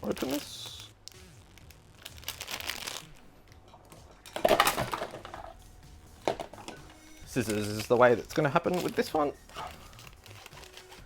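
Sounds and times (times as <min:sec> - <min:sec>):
plastic packet crinkling: 0:00.0 - 0:03.2, 0:07.3 - 0:11.0.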